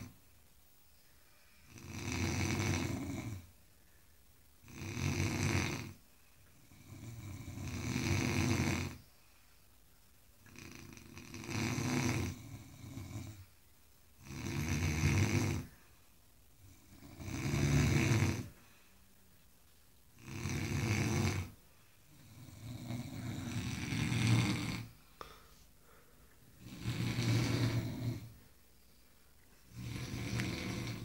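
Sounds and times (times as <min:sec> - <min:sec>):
man snoring: 0:01.6 - 0:03.5, 0:04.6 - 0:06.0, 0:06.6 - 0:09.0, 0:10.5 - 0:13.4, 0:14.2 - 0:15.7, 0:16.6 - 0:18.6, 0:20.2 - 0:21.6, 0:22.2 - 0:25.0, 0:26.6 - 0:28.4, 0:29.7 - 0:31.0.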